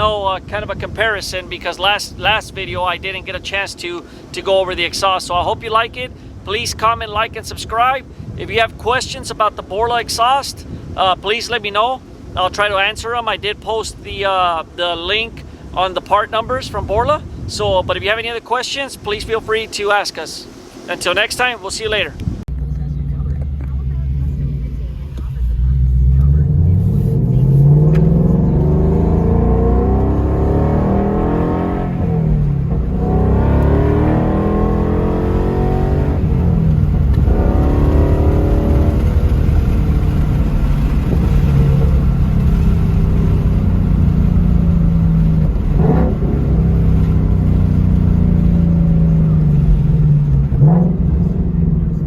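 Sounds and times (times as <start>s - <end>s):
car engine accelerating through gears: 22.5s - 52.0s.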